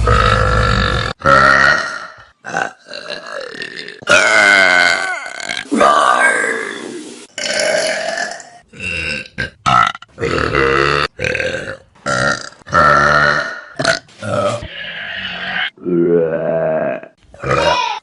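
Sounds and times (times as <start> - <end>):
people belching: 0.0 - 6.8, 7.4 - 14.7, 15.3 - 18.0.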